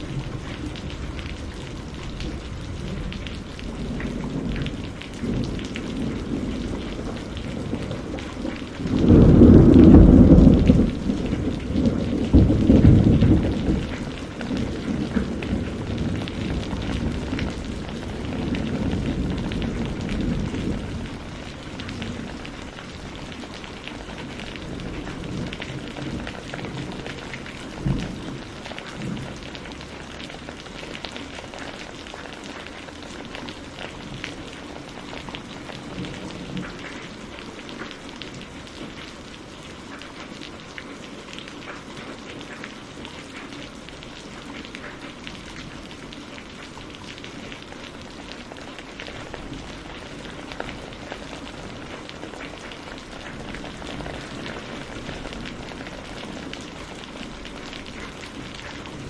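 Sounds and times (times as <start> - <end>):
thunder rumbling: 0.0 - 31.8, 45.4 - 59.0
rain pattering: 0.0 - 59.0
sharp thunder crack: 8.9 - 14.0.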